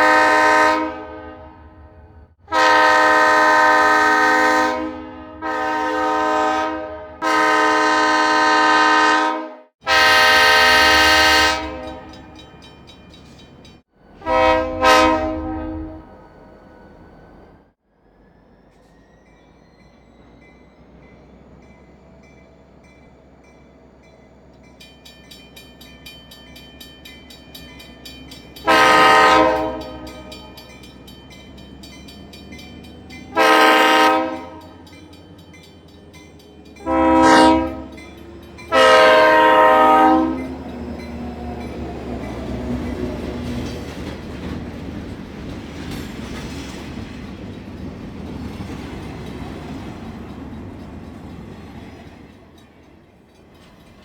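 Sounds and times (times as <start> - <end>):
train horn blasts: 0.0 - 12.4, 14.1 - 16.9, 28.6 - 30.8, 33.1 - 35.1, 36.8 - 43.9
passing train rumble and clatter: 0.0 - 54.0
crossing bell ringing: 9.9 - 16.0, 18.7 - 45.2.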